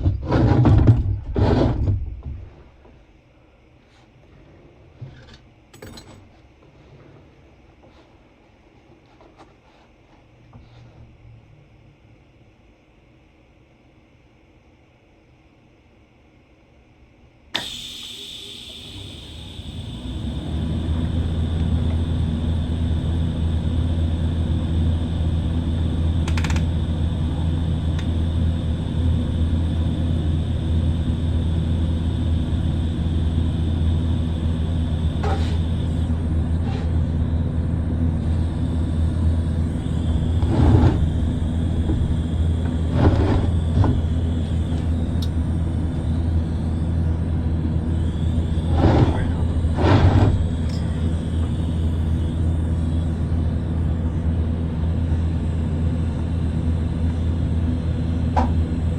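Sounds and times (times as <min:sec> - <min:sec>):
welder electrical hum: 0:00.0 - 0:58.9
arc welding bursts: 0:17.6 - 0:36.3, 0:38.2 - 0:53.6.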